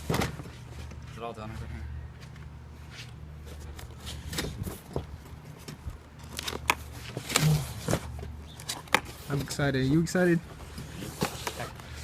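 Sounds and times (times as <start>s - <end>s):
cardboard scraping and rustling: 3.4s - 12.0s.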